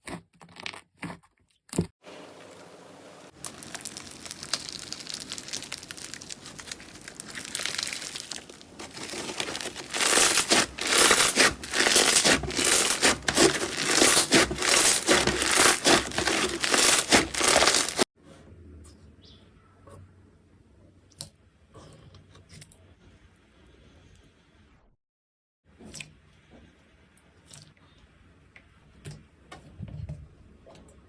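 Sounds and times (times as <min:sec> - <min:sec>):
slime crackling when squeezed: 0:03.4 - 0:18.1.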